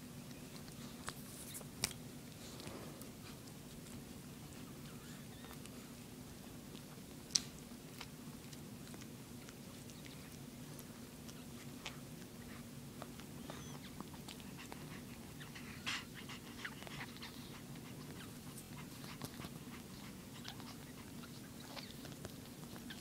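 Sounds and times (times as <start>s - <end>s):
puppies suckling: 0.1s - 23.0s
puppy squeaks: 4.8s - 5.6s, 13.4s - 14.0s.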